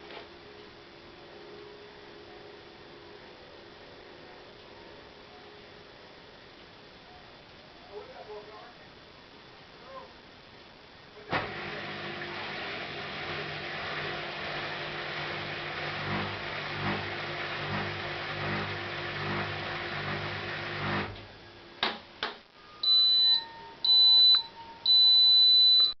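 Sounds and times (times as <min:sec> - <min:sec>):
washing machine drum humming: 0:11.3 - 0:21.3
high beeps: 0:22.6 - 0:26.0.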